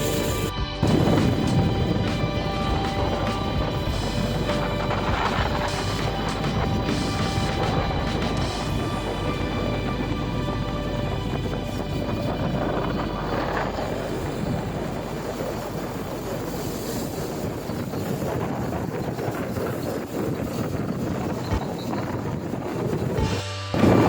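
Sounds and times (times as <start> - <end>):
vehicle moving rushing noise: 0.0 - 18.9
wind buffeting microphone: 0.0 - 24.0.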